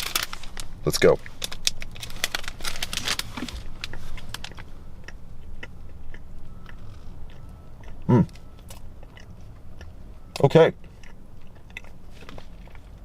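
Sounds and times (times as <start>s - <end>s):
plastic wrapper crinkling: 0.0s - 4.7s
biting and chewing cookie: 1.1s - 13.0s.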